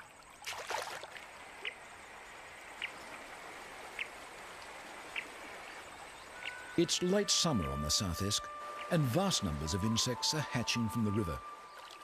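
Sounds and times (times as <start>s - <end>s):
river water rushing: 0.0s - 12.0s.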